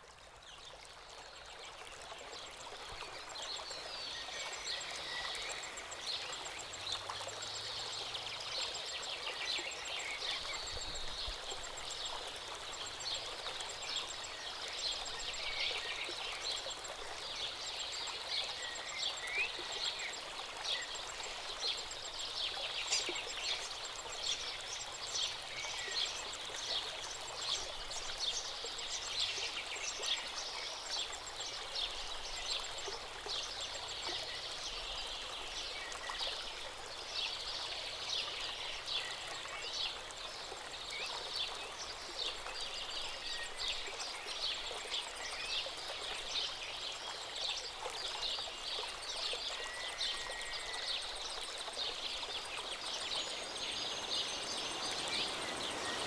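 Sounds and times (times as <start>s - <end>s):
river water flowing: 0.0s - 56.0s
faint bird chirps: 51.9s - 56.0s.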